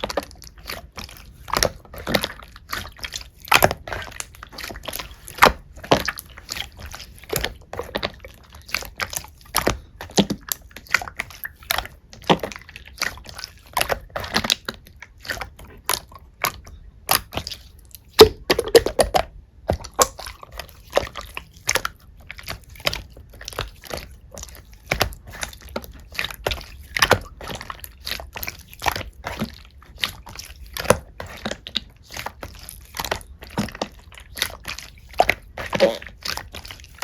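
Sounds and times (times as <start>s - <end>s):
wet slime squishing and popping: 0.0s - 37.0s.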